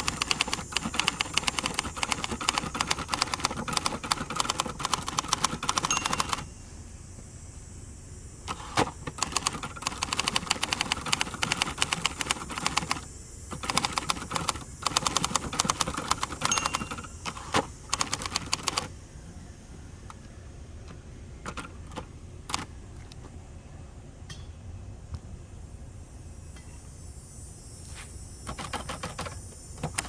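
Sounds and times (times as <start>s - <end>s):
manual typewriter keystrokes: 0.0s - 6.5s, 8.5s - 19.0s, 20.8s - 23.2s, 28.4s - 30.0s.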